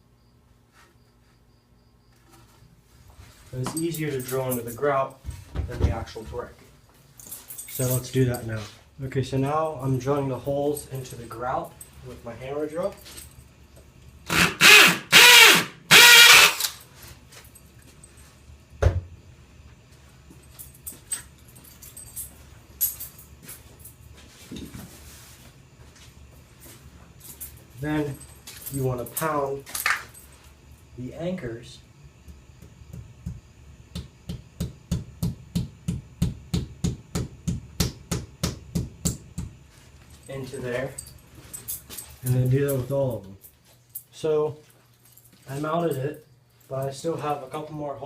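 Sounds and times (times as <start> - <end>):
hammer drill boring into brick: 14.3 - 16.7.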